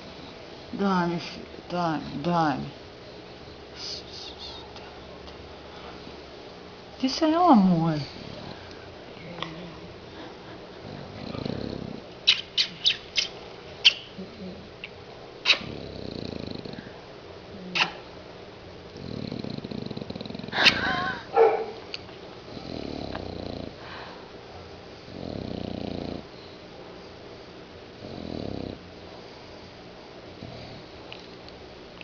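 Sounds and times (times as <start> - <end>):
dog snoring: 10.8 - 12.1, 15.5 - 17.0, 19.0 - 20.6, 22.5 - 23.8, 25.1 - 26.3, 28.0 - 28.9, 30.4 - 31.0
dog snorting: 10.8 - 14.6, 15.4 - 16.9, 19.0 - 21.8, 22.5 - 23.8, 25.1 - 26.3, 28.0 - 28.8.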